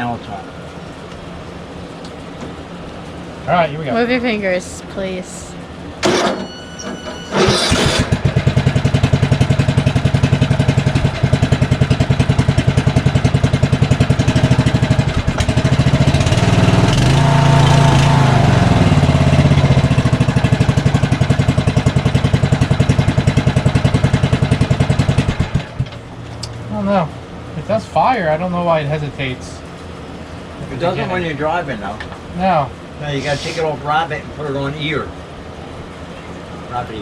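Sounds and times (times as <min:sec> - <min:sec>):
small engine running: 0:07.2 - 0:25.8.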